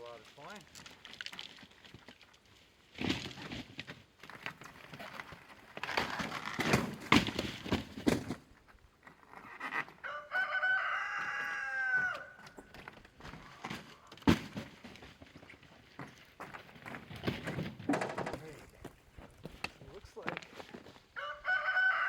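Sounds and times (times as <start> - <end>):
rooster crowing: 10.0 - 12.6, 21.2 - 22.0
sharp clattering knocks: 17.3 - 18.6.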